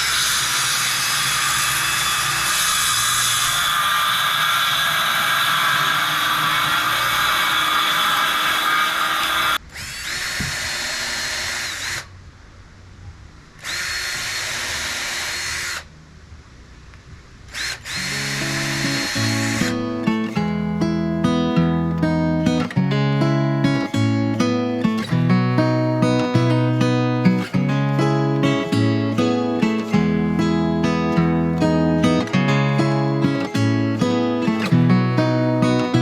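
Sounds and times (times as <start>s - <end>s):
power drill running: 0.0s - 12.1s, 13.6s - 15.9s, 17.5s - 20.4s.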